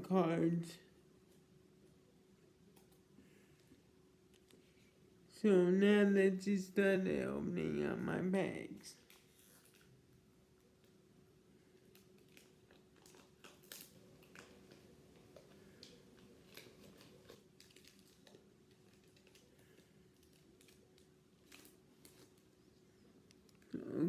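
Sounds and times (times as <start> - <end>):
faint steady hum: 0.0 - 24.0
foil packs crinkling and tearing: 11.8 - 22.6.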